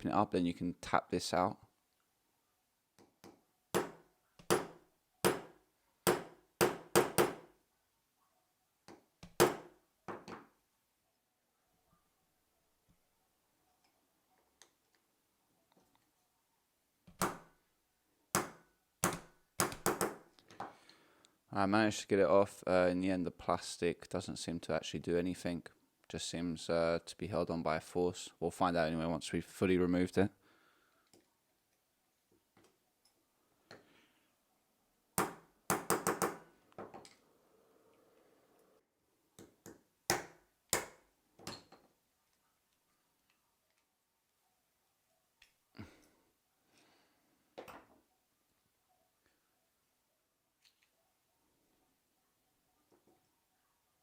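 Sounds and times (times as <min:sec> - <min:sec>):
small clicks of handling parts: 0:50.6 - 0:51.0.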